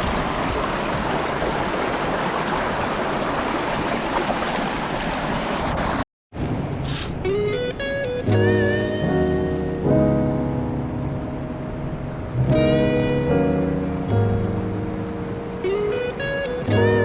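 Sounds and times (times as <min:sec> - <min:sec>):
stream water rushing: 0:00.0 - 0:06.6, 0:08.2 - 0:17.0
guitar music: 0:07.2 - 0:17.0.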